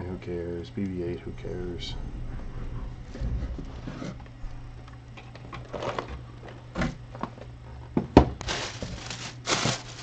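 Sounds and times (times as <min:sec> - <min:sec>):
plastic pieces rustling and clicking: 0:08.4 - 0:10.0.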